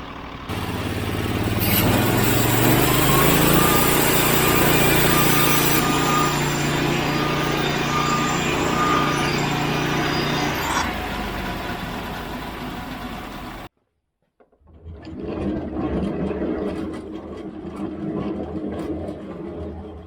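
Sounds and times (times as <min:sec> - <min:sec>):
sawmill engine humming: 0:00.0 - 0:13.7
saw blade cutting boards: 0:00.5 - 0:13.0.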